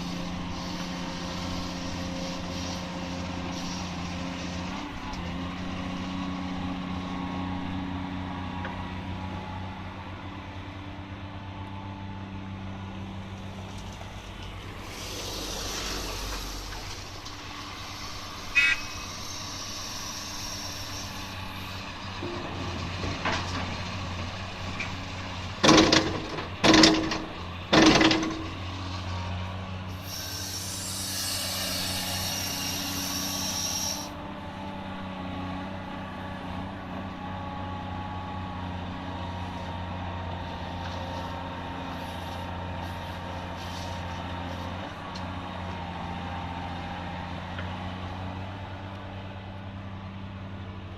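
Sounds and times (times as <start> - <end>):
hiss: 0.0 - 4.8, 14.6 - 22.0, 29.9 - 34.2, 40.9 - 44.8
diesel engine running: 0.0 - 50.9.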